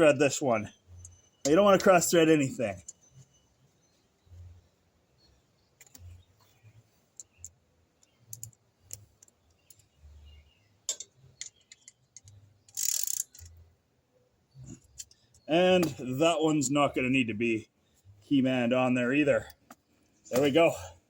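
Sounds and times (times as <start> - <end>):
metal parts and tools clicking: 7.2 - 9.9, 10.9 - 13.6.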